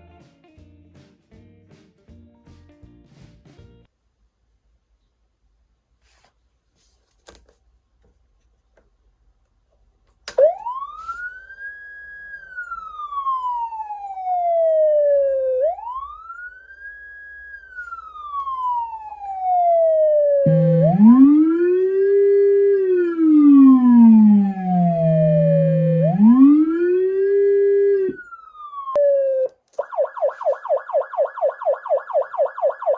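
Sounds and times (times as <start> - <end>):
low rumbler siren: 10.3 - 32.9
electronic siren wailing: 10.4 - 32.9.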